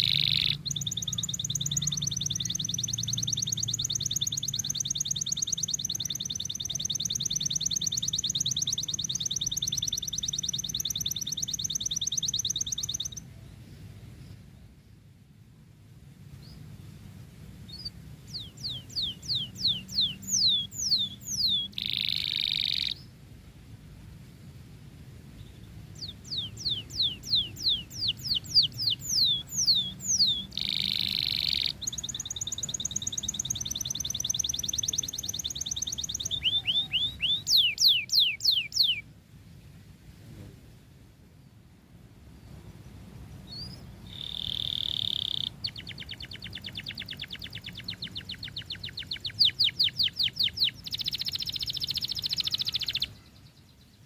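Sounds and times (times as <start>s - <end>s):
canary singing: 0.0s - 13.3s, 17.6s - 23.1s, 25.4s - 39.1s, 43.4s - 54.0s.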